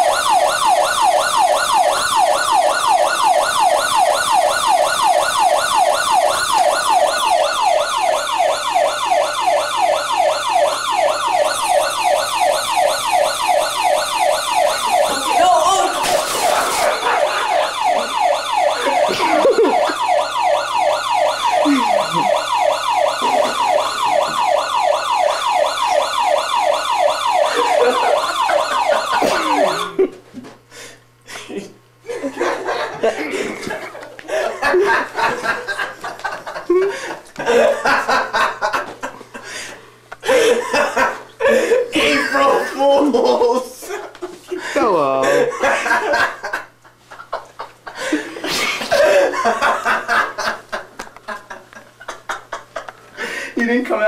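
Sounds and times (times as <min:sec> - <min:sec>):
fire alarm siren whooping: 0:00.0 - 0:30.1, 0:32.4 - 0:38.8.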